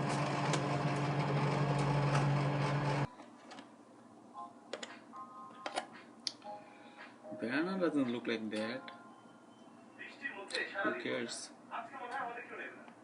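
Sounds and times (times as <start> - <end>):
machine hum: 0.0 - 3.1.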